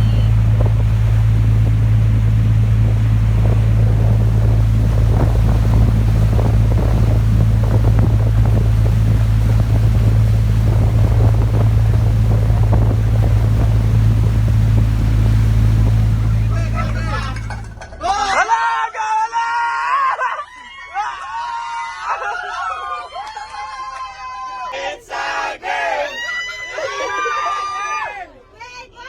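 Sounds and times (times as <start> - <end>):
wind buffeting microphone: 0.0 - 17.9
water slapping against hull: 0.0 - 18.0
boat engine droning: 0.0 - 18.4.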